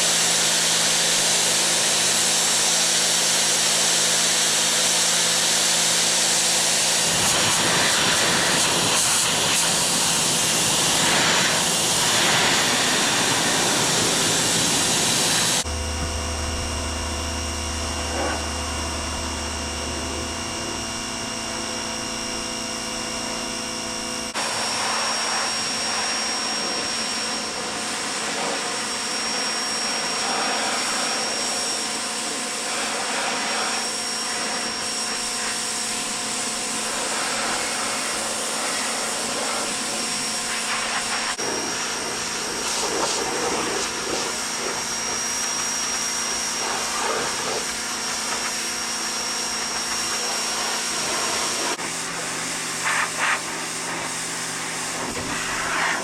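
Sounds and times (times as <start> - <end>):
pressure washer motor hum: 0.0 - 56.0
water jet hissing: 6.7 - 20.3, 32.3 - 56.0.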